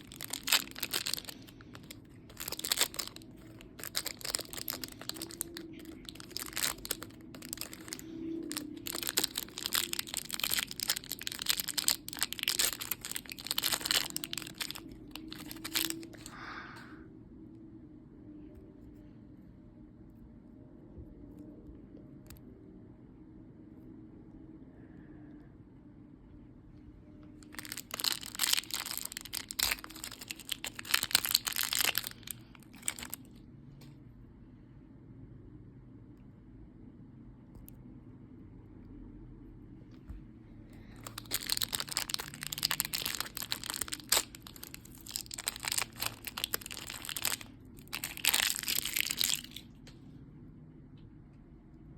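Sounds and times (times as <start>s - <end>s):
plastic packaging crinkling: 0.0s - 16.4s, 27.4s - 33.4s, 40.9s - 49.9s.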